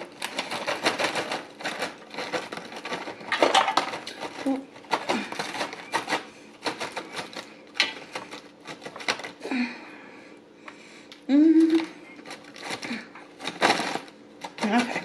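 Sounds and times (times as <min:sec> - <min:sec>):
croutons clicking and rattling: 0:00.0 - 0:09.4, 0:11.6 - 0:15.0
person humming vocal sound: 0:11.2 - 0:12.0.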